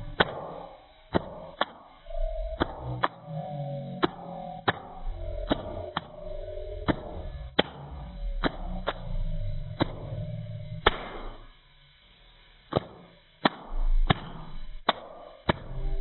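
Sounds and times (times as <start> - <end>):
stomach rumbling and gurgling: 0.0 - 11.4.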